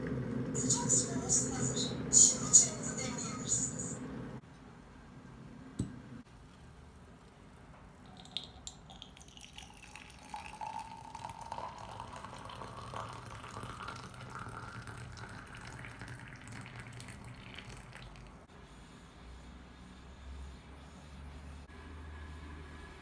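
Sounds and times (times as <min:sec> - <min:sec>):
water running into container: 0:08.2 - 0:18.4.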